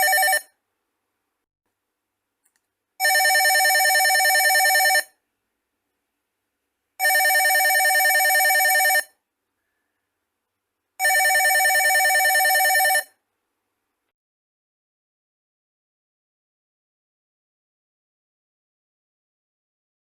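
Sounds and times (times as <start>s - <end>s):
telephone ringing: 0.0s - 0.5s, 3.0s - 5.2s, 7.0s - 9.2s, 11.0s - 13.2s.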